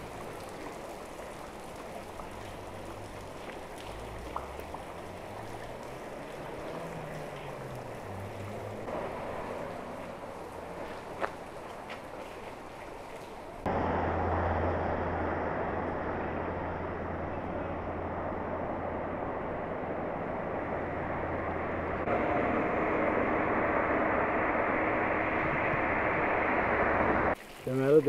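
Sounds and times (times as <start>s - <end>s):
low steady hum: 13.6s - 27.4s.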